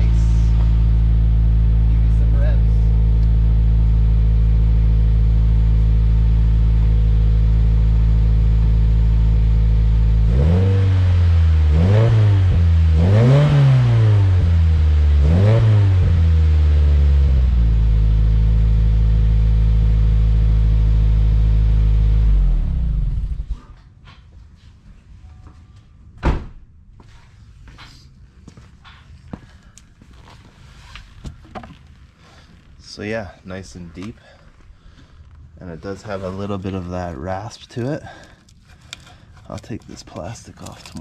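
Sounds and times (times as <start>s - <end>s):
car engine idling: 0.0s - 23.6s
car engine revving: 0.0s - 23.6s.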